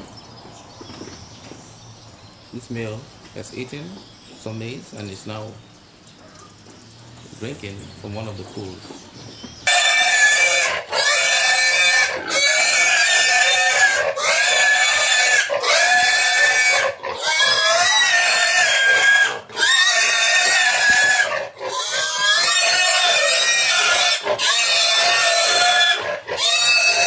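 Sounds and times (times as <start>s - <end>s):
pig squealing loudly: 9.7s - 27.0s.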